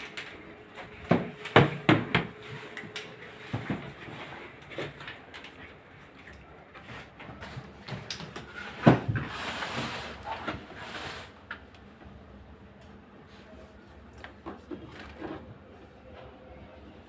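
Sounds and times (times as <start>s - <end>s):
rustling or scraping: 6.7s - 11.6s.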